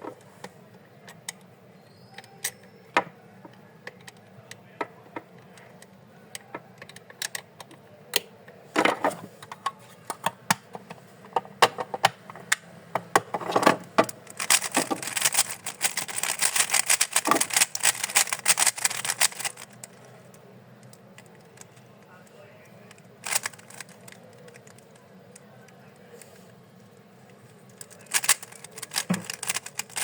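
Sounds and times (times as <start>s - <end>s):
puzzle cube clicking turns: 14.1s - 20.0s, 23.2s - 24.8s, 27.8s - 30.0s.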